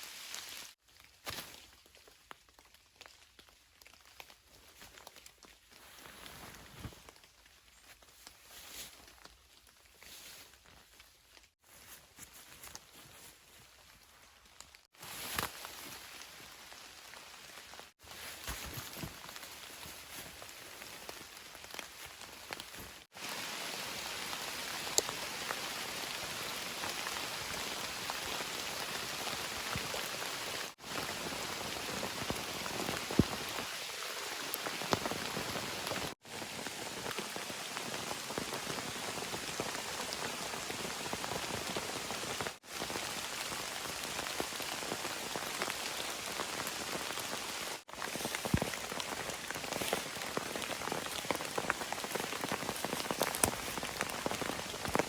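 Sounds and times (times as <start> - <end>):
steady rain: 19.1 - 55.0.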